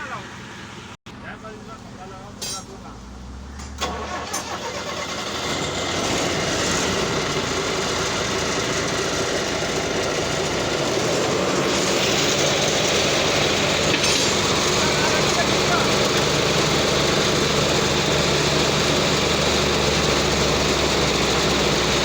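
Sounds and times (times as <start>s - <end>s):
construction machine engine running: 0.0s - 22.0s.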